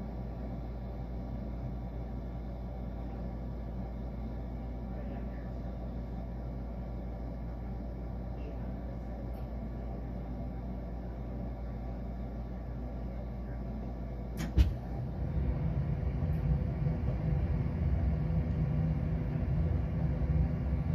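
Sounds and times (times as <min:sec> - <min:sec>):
furnace low hum: 0:00.0 - 0:20.9
furnace low rumble: 0:00.0 - 0:20.9
furnace click and thump: 0:14.4 - 0:14.9.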